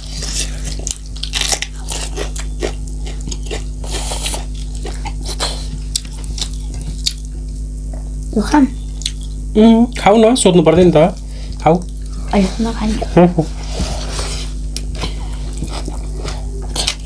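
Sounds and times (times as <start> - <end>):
person chewing crunchy food: 0.0 - 10.0, 11.2 - 12.4, 13.0 - 17.0
wet mouth clicks: 9.0 - 9.4.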